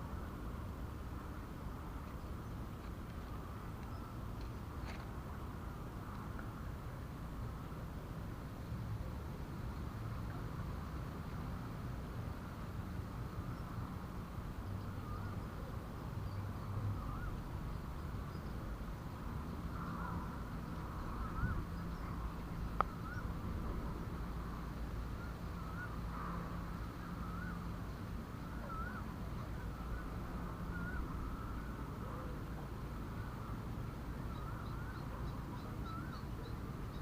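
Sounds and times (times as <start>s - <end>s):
steady low rumble: 0.0s - 37.0s.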